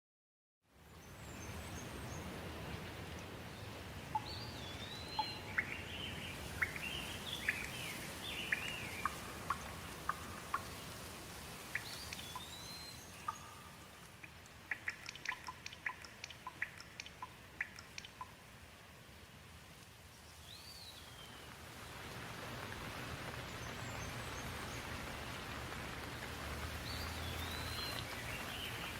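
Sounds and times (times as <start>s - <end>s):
steady rain: 0.7s - 28.9s
sharp bird ticks: 4.1s - 11.0s, 11.7s - 18.4s
birds whistling: 26.8s - 28.9s.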